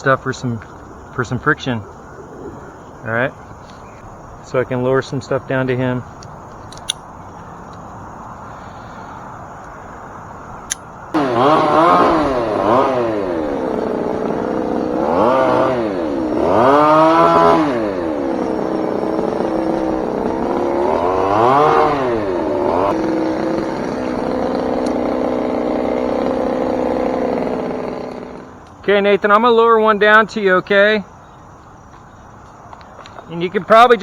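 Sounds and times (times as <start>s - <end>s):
chainsaw starting and revving: 11.1s - 28.7s.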